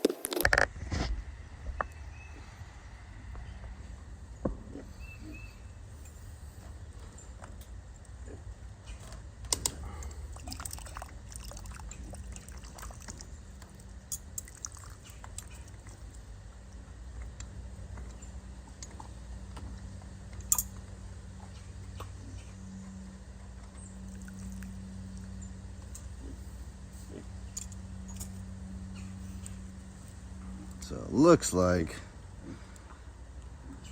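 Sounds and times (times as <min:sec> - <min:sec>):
water trickling and dripping: 0:10.2 - 0:16.3, 0:24.0 - 0:25.3.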